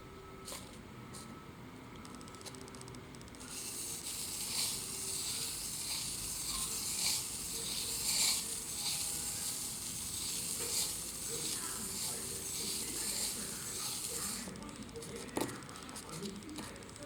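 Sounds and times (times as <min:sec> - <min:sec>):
sandpaper rubbing: 0:03.5 - 0:14.5.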